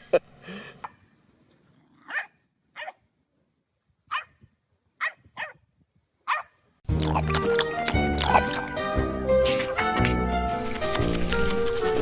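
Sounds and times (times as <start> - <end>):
dog barking: 2.1 - 3.0, 4.1 - 4.4, 5.0 - 5.6, 6.3 - 6.6.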